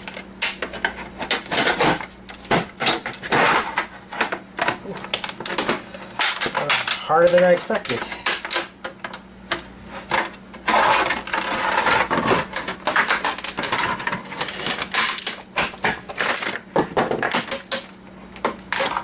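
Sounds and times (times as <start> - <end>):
scraping of casing: 0.0 - 19.0.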